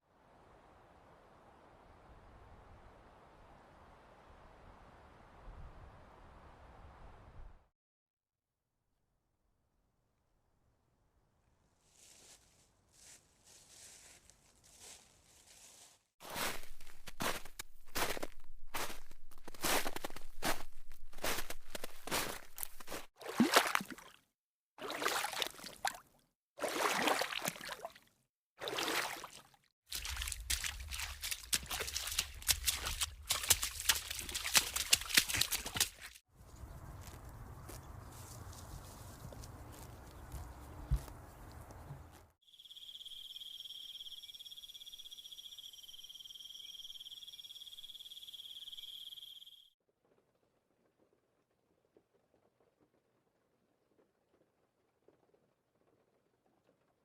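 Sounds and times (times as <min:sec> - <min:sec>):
crickets chirping: 0:42.5 - 0:49.7.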